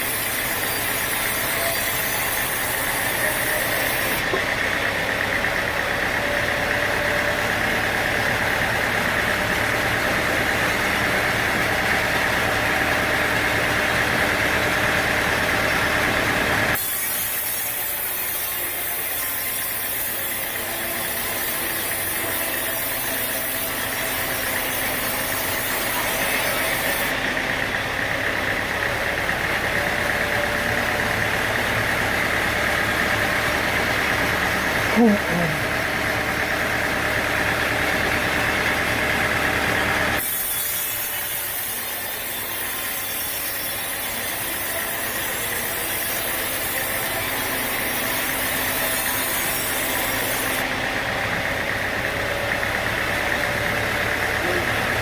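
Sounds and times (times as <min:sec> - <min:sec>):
sawmill machinery droning: 0:00.0 - 0:55.0.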